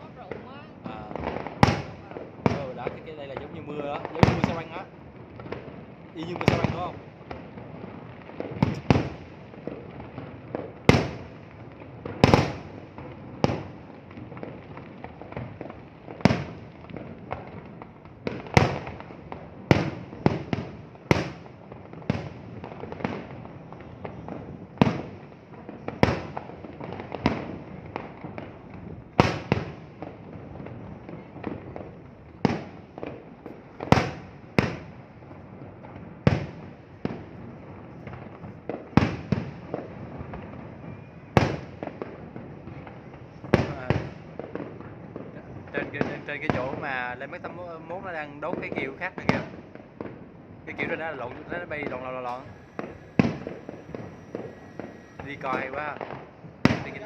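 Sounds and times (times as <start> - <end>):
fireworks bursting: 0.0 - 57.0
background murmur: 48.5 - 57.0.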